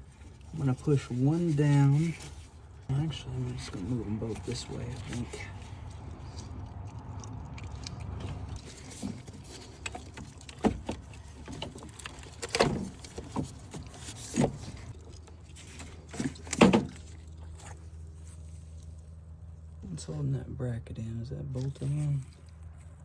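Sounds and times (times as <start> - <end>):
clicks and rattles of hand work: 8.0 - 17.8.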